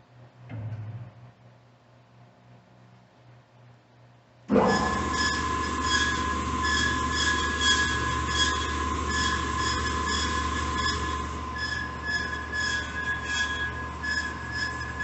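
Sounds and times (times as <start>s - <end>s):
bandsaw motor hum: 4.5s - 15.0s
high whine of saw blade: 4.5s - 15.0s
flickering squeal: 4.7s - 15.0s.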